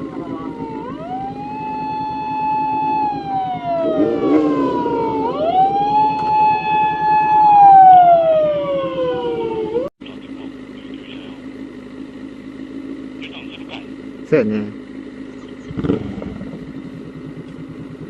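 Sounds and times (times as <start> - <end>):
motorcycle engine idling: 0.0 - 3.7, 9.5 - 18.0
emergency siren wailing: 0.0 - 11.4, 15.3 - 18.0.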